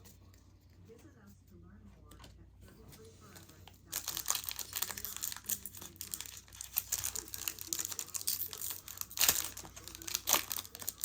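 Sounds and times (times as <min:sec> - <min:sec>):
cards and foil pack crinkling: 0:03.0 - 0:11.0.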